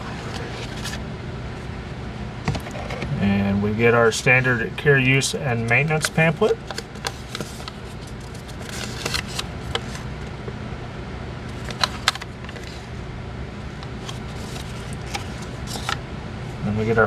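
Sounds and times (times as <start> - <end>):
low room hum: 0.0 - 17.0
paper and cardboard rustling: 0.1 - 1.0, 5.6 - 10.1, 11.5 - 12.9, 13.8 - 16.0.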